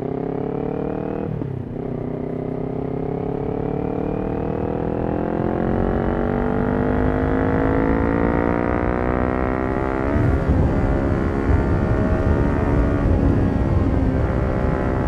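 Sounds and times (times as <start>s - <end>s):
motorcycle engine accelerating: 0.0s - 15.0s.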